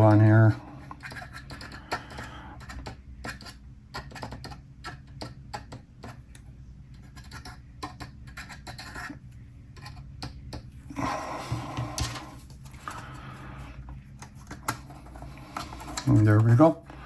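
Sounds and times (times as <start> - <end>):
low steady hum: 0.0 - 17.0
plastic parts clicking and tapping: 1.0 - 8.4.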